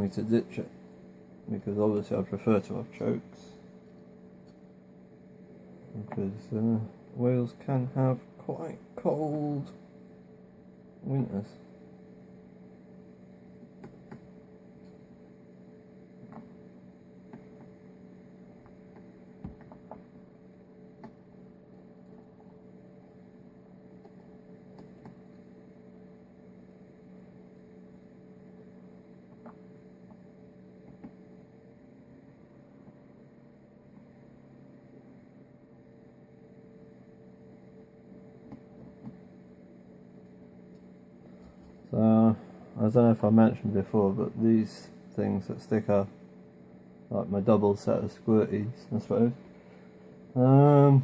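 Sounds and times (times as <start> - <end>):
low electrical hum: 0.0 - 51.0
faint clicks and taps: 13.8 - 15.0, 16.2 - 16.6, 17.2 - 17.8, 18.6 - 20.1, 20.9 - 22.6, 24.0 - 25.5, 29.3 - 31.2, 38.4 - 39.2.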